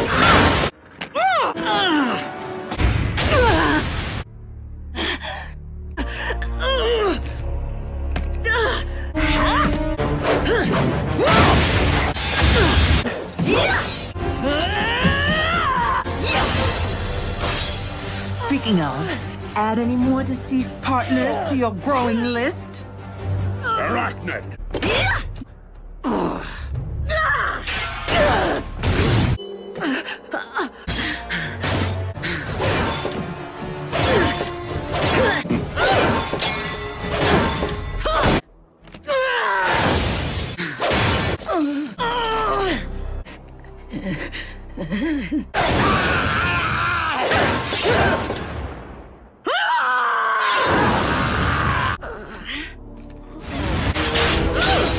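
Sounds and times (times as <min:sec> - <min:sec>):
action score music: 0:00.0 - 0:49.4, 0:50.7 - 0:54.9
woman grunting and gasping: 0:40.5 - 0:45.9, 0:51.7 - 0:52.8.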